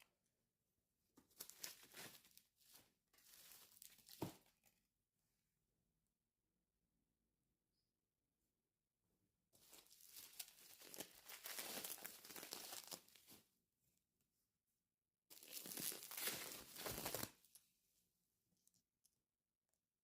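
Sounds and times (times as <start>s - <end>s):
packaging crinkling and crumpling: 1.3s - 4.5s, 9.6s - 13.4s, 15.3s - 17.5s.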